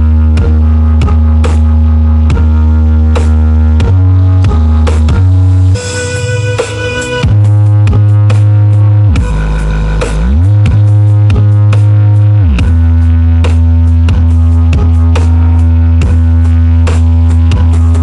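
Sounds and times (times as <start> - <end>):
loud bass-heavy electronic music: 0.0 - 18.0.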